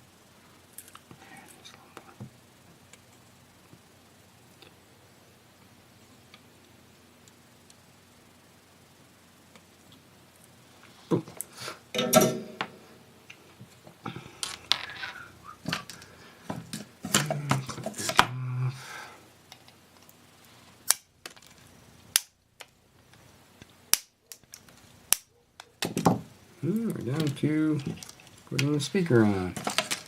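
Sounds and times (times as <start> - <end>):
rustling: 26.6 - 30.0.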